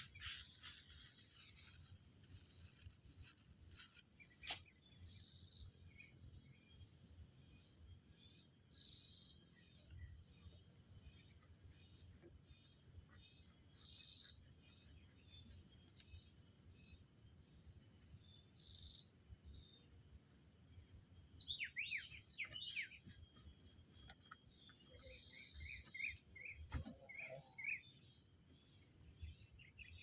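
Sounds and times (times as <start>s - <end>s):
bird calls: 21.5s - 28.0s.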